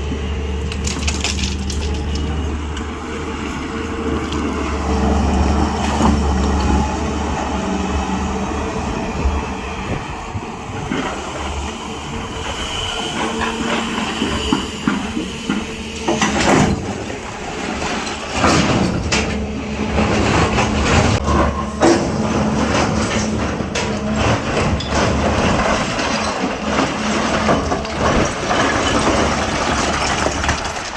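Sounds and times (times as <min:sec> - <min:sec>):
diesel excavator engine running: 0:00.0 - 0:30.9
metallic clanks and knocks: 0:13.2 - 0:30.9.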